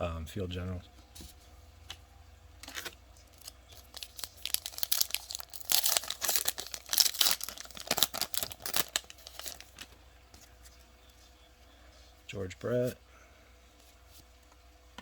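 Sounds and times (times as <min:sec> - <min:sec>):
plastic wrapper tearing and crinkling: 0:02.7 - 0:09.8.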